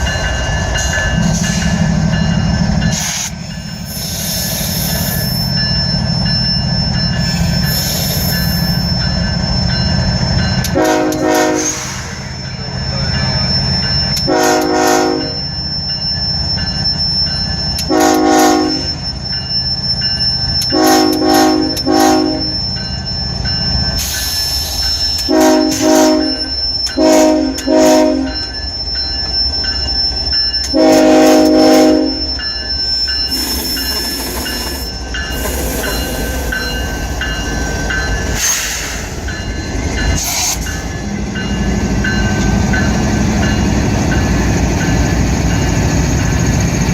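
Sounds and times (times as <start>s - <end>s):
train wheel noise: 0.0s - 46.9s
locomotive horn blasts: 10.7s - 11.8s, 14.3s - 15.4s, 17.9s - 18.9s, 20.7s - 22.6s, 25.3s - 28.4s, 30.7s - 32.2s
wheel squeal: 32.0s - 37.4s.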